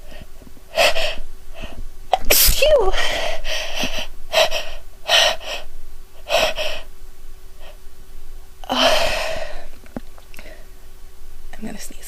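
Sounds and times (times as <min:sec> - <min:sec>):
woman gasping breaths: 0:00.0 - 0:01.8, 0:02.9 - 0:06.9, 0:08.6 - 0:09.8
woman sneezing: 0:02.2 - 0:03.0.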